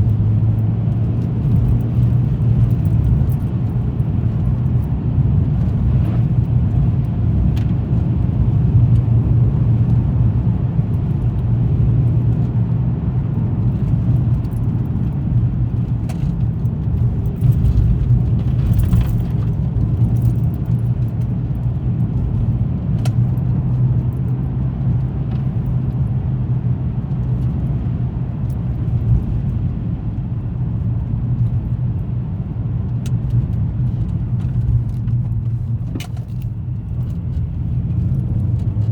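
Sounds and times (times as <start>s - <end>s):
car engine and tyre rumble: 0.0s - 38.9s.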